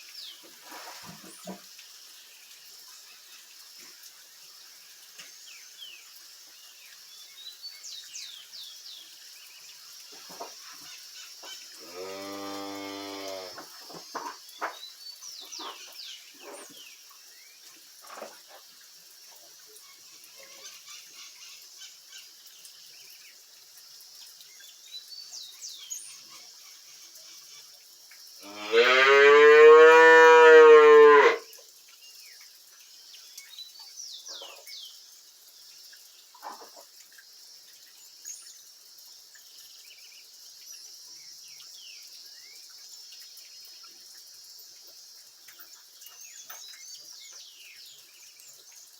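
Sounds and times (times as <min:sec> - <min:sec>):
cow mooing: 0:11.8 - 0:13.6, 0:28.4 - 0:31.4.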